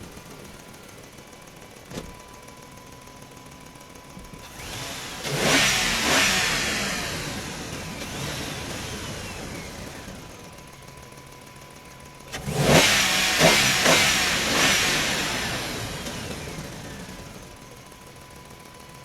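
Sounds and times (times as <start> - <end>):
vehicle engine revving: 4.4 - 10.7, 12.3 - 17.7.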